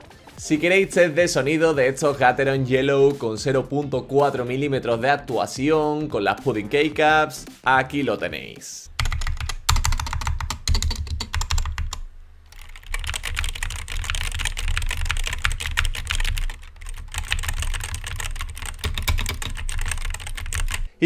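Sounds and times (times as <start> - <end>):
mechanical keyboard typing: 9.0 - 20.9.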